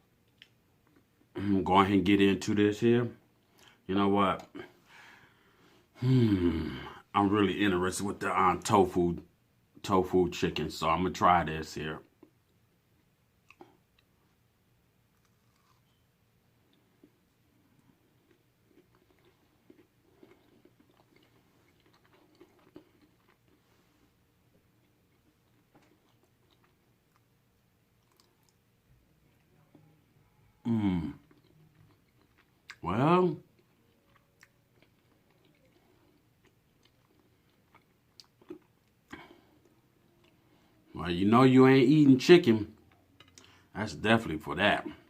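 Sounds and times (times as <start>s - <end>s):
chewing: 15.1s - 16.0s, 16.6s - 27.3s, 28.0s - 28.6s, 31.0s - 32.8s, 33.5s - 40.6s, 42.8s - 43.7s.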